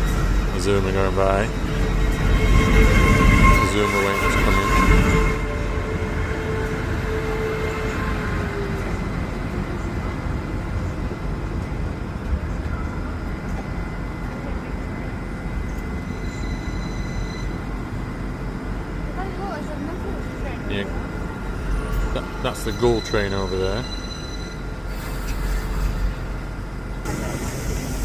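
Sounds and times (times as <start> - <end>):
train whine sliding down: 0.0 - 10.9, 15.6 - 18.3, 19.4 - 28.0
train rumble: 0.0 - 28.0.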